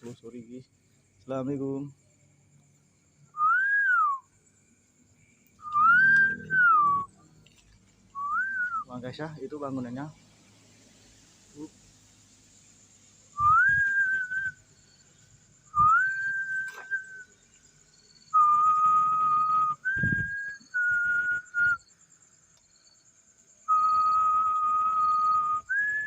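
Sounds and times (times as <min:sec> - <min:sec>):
person whistling notes: 0:05.6 - 0:07.1, 0:13.4 - 0:14.5, 0:15.8 - 0:17.2.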